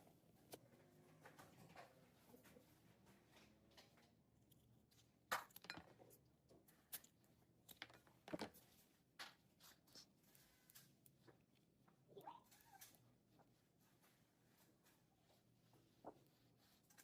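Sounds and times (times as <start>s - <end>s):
small objects clicking and knocking: 5.3s - 6.2s, 6.9s - 8.6s.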